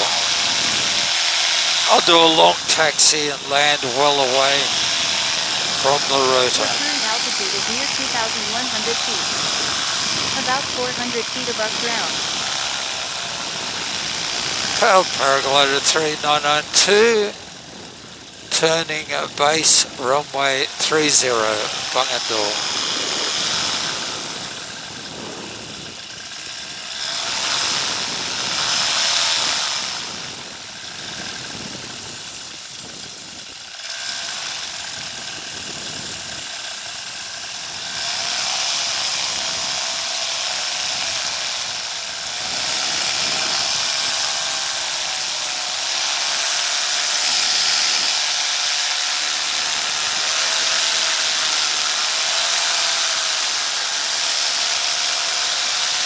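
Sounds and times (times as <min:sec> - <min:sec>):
paramotor engine running: 0:00.0 - 0:30.2.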